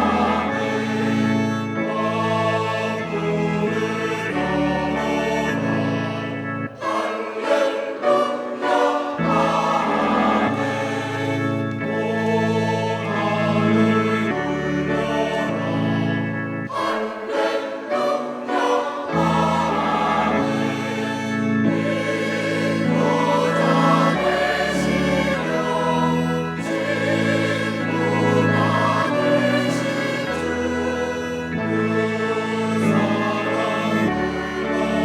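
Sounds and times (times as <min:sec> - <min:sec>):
choir singing a hymn: 0:00.0 - 0:35.0
instrumental accompaniment: 0:00.0 - 0:35.0.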